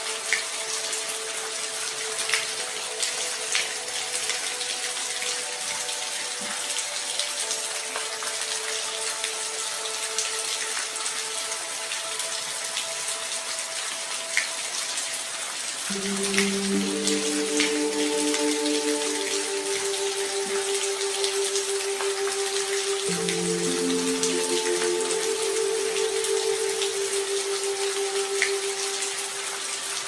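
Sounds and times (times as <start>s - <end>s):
steady rain hiss: 0.0s - 30.0s
faint sustained background tones: 15.9s - 30.0s.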